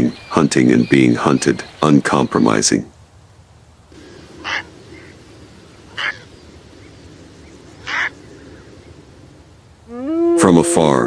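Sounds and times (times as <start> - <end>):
low steady background noise: 0.0 - 11.0
short animal calls: 3.9 - 11.0.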